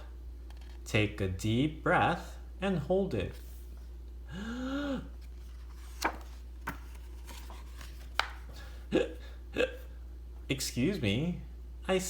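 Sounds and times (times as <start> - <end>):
person hiccupping: 8.9 - 9.9.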